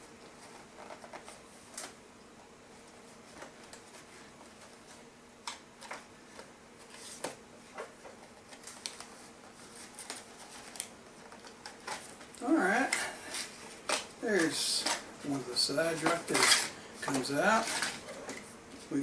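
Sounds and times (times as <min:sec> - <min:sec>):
faint steady hum: 0:00.0 - 0:19.0
packaging being opened by hand: 0:06.8 - 0:18.5.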